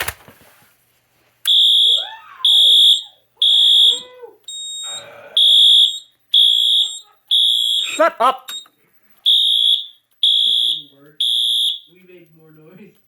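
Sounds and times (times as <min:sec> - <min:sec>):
high-pitched alarm horn blasts: 0:01.5 - 0:04.0, 0:04.6 - 0:08.0, 0:09.3 - 0:11.9.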